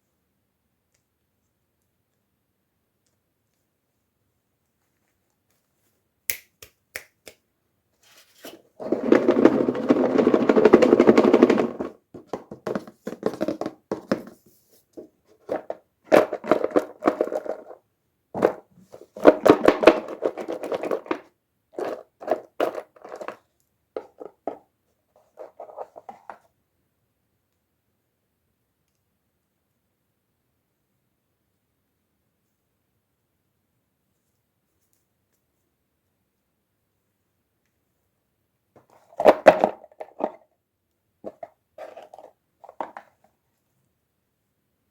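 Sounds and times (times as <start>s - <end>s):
packaging crinkling and scraping: 8.0s - 12.0s, 41.3s - 43.1s.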